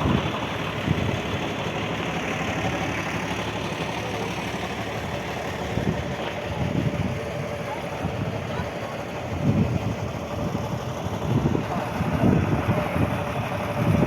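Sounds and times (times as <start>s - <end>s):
wind on microphone: 0.0s - 1.3s
vehicle engine running: 0.0s - 14.0s.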